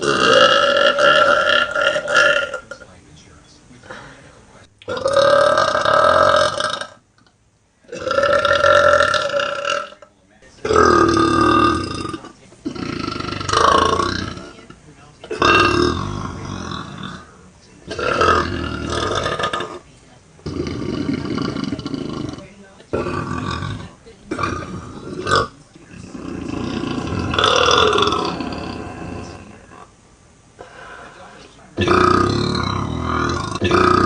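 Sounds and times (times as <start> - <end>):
woman belching: 0.0 - 2.7, 4.8 - 7.0, 7.9 - 14.6, 15.3 - 17.3, 17.9 - 19.8, 20.4 - 29.5, 31.8 - 34.0.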